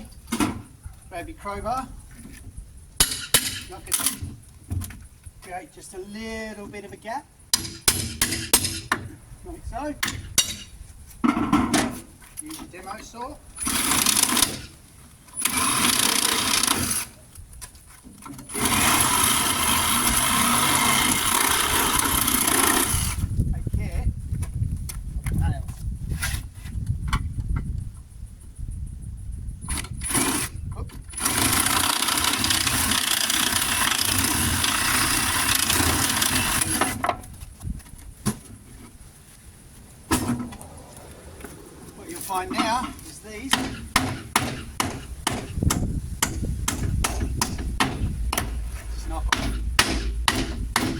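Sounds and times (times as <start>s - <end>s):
reciprocating saw cutting nails: 43.5s - 48.6s
short knocks: 43.5s - 50.9s.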